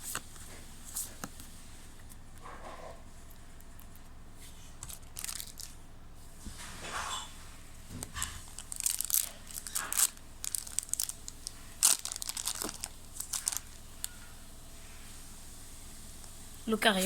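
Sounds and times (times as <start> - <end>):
foil wrapper crinkling and tearing: 4.8 - 5.8, 8.0 - 14.2.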